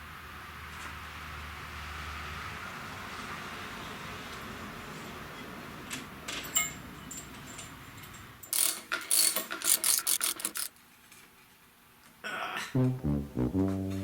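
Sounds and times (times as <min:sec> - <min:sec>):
ratchet wrench clicking: 0:08.5 - 0:10.7.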